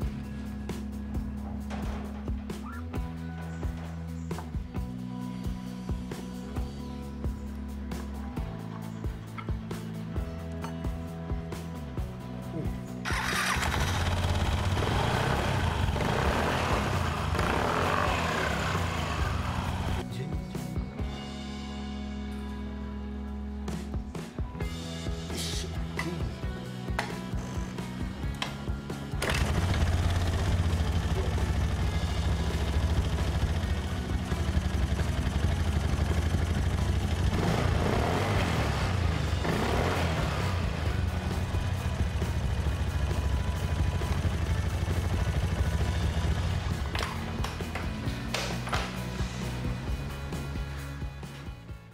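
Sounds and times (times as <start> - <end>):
scooter engine drone: 13.0 - 20.0, 27.2 - 48.8.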